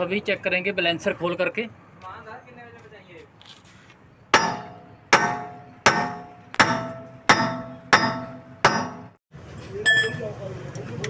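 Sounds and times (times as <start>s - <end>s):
hammer striking metal: 4.3s - 9.2s.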